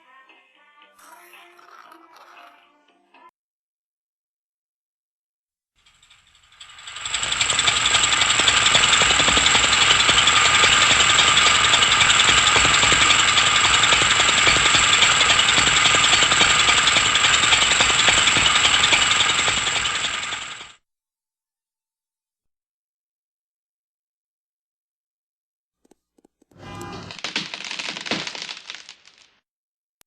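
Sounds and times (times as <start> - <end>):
machine rattling: 5.8 - 20.8.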